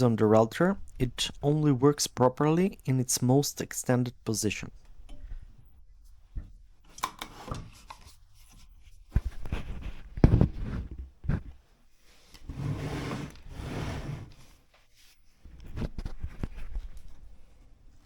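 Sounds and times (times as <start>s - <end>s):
sliding rubbing noise: 12.4s - 14.6s.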